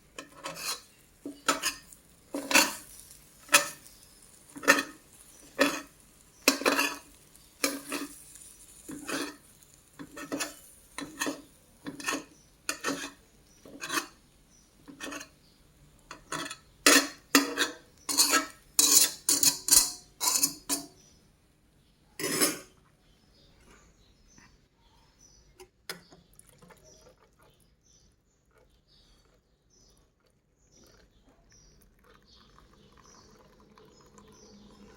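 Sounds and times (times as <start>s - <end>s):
utensils clinking against dishes: 0.2s - 3.9s, 4.5s - 14.2s, 14.9s - 15.4s, 16.1s - 21.0s, 22.2s - 22.8s
utensil scraping: 0.2s - 14.2s, 14.9s - 15.4s, 16.1s - 20.9s, 22.2s - 22.7s.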